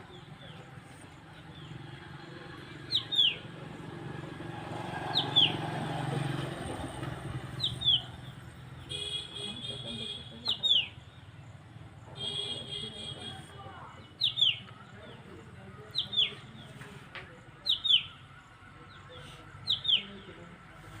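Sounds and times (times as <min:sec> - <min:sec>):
traffic rumble: 0:00.0 - 0:21.0.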